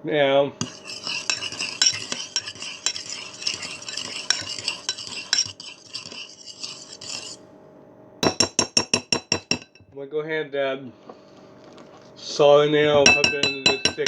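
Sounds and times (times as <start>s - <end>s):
fork scraping against bowl: 0.6s - 7.4s, 13.0s - 14.0s.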